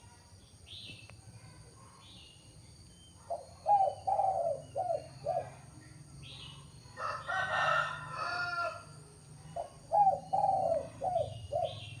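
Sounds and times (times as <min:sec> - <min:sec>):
dove cooing: 0:03.6 - 0:05.6, 0:09.6 - 0:12.0
rooster crowing: 0:07.0 - 0:08.9.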